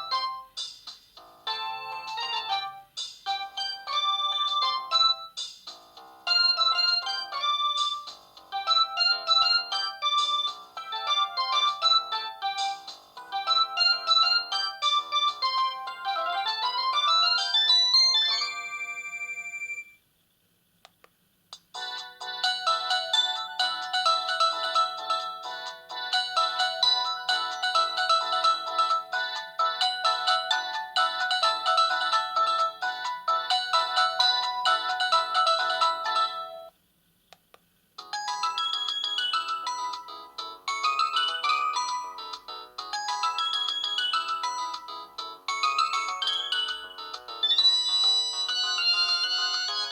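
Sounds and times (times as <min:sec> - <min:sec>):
mobile phone ringtone melodies: 0:00.0 - 0:00.5, 0:01.2 - 0:05.4, 0:06.0 - 0:20.0, 0:21.8 - 0:36.7, 0:38.0 - 0:49.9.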